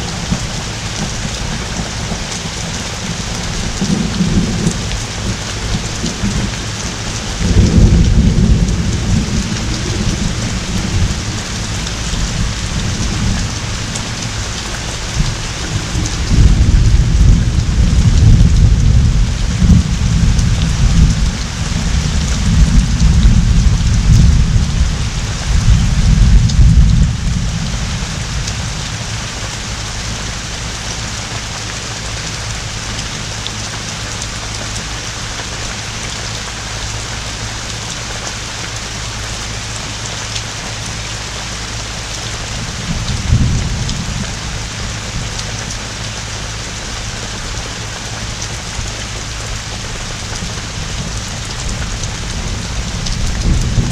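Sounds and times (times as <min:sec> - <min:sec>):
thunder rumbling: 0:00.0 - 0:29.2, 0:42.6 - 0:45.8, 0:49.9 - 0:53.9
heavy rain pouring: 0:00.0 - 0:53.9.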